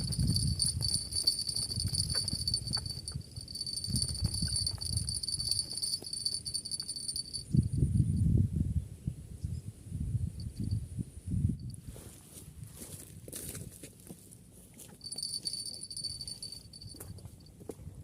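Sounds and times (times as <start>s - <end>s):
insect trilling: 0.0s - 7.8s.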